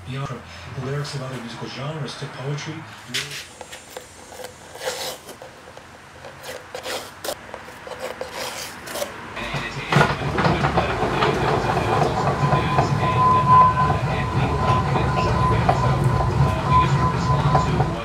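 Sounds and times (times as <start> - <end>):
hand scraping and rubbing wood: 3.0 - 18.0
machine humming: 9.4 - 18.0.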